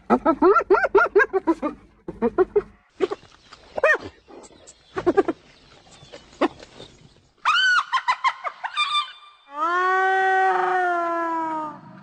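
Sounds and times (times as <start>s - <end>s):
hyena yelps: 7.4s - 12.0s.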